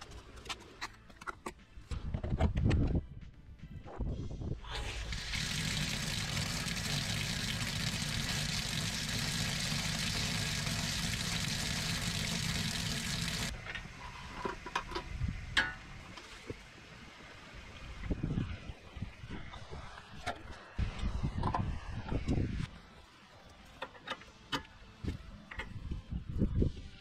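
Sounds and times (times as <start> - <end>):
pressure washer running: 5.0 - 13.5.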